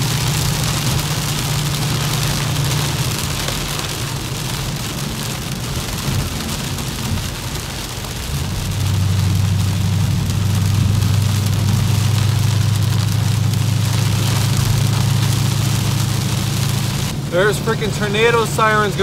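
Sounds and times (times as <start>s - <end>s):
engine and tyres on wet road: 0.0s - 19.0s
heavy rain on car roof: 0.0s - 19.0s.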